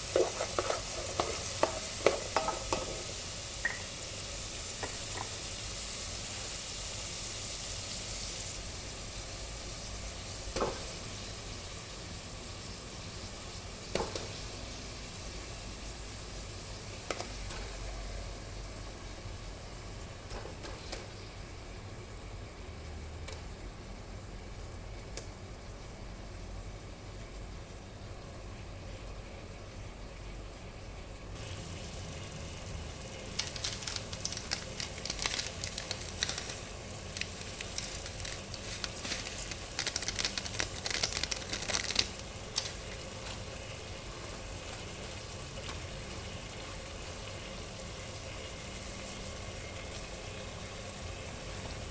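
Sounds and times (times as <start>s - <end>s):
chicken sizzling in hot oil: 0.0s - 19.3s, 31.3s - 51.9s.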